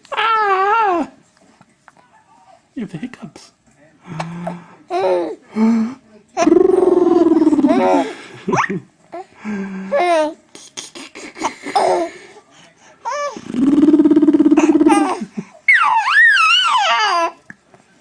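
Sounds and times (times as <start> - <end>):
young child laughing: 7.4 - 8.8, 14.6 - 15.4
child squealing: 15.7 - 17.1.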